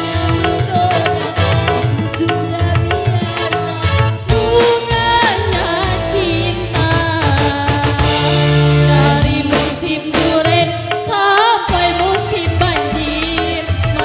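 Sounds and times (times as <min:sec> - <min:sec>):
steady bass: 0:00.0 - 0:10.4
drums: 0:00.0 - 0:14.0.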